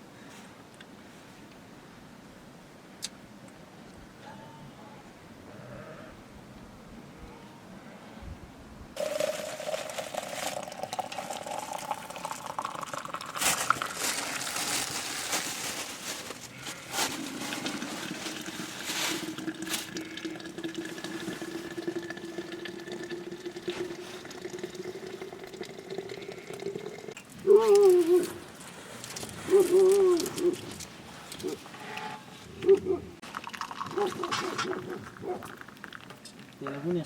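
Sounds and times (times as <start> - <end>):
water pouring into container: 9.0 - 14.6, 17.2 - 27.2, 33.2 - 34.3
loud wavering call: 29.5 - 30.6.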